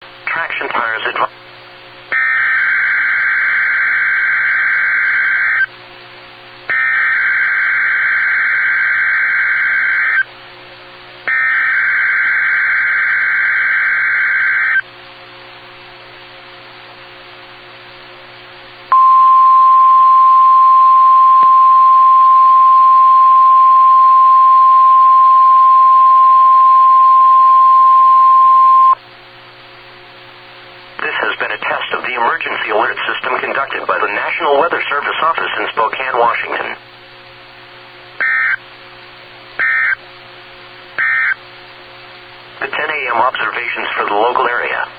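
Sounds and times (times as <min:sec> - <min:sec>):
shrill warbling data tone: 0:38.2 - 0:38.6, 0:39.6 - 0:40.0.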